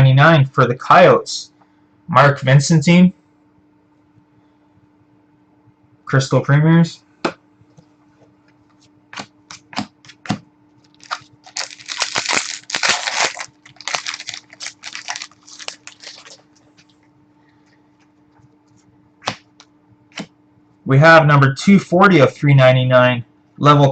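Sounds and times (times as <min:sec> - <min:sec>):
foil wrapper crinkling: 0:10.8 - 0:17.0.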